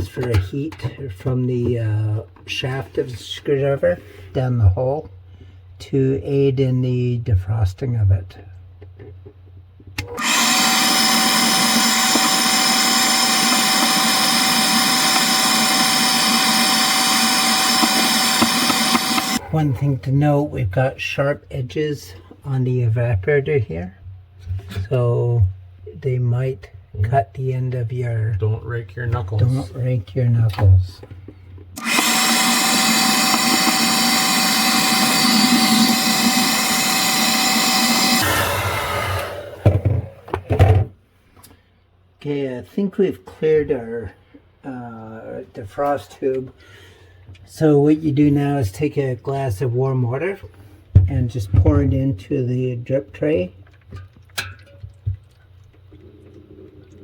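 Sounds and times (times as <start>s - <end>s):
hair dryer running: 10.1s - 19.4s, 31.8s - 40.1s.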